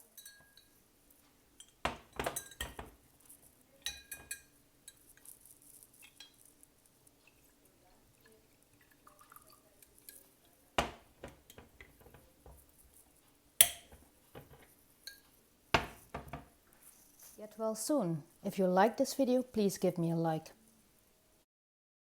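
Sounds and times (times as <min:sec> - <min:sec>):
tea glass clinking: 0:00.0 - 0:00.8, 0:01.6 - 0:02.9, 0:03.8 - 0:05.0.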